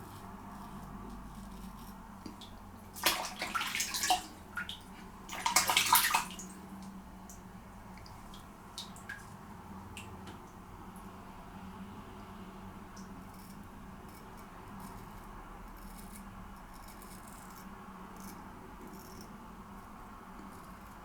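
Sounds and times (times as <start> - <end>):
running water splashing: 3.0 - 6.9, 8.0 - 9.3.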